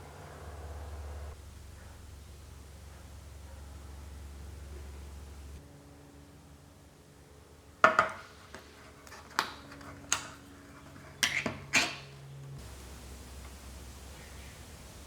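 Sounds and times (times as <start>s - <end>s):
low hum: 0.0s - 6.6s
kitchenware knocking and clinking: 7.8s - 8.2s, 11.0s - 12.1s.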